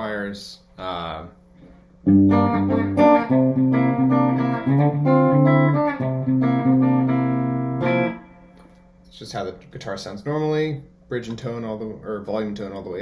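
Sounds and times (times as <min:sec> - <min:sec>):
clean electric guitar notes: 0:02.1 - 0:08.6.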